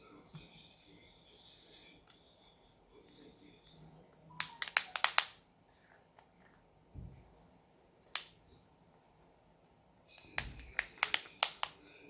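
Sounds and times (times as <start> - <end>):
sharp plastic clicks: 4.4 - 5.4, 10.2 - 11.8.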